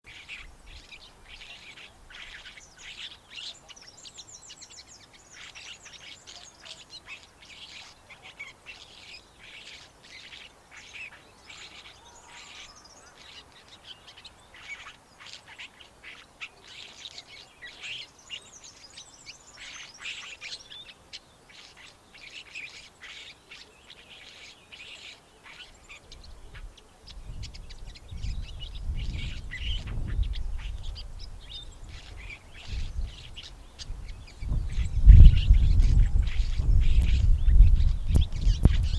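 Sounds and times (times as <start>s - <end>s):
bird chirping: 16.6s - 38.9s.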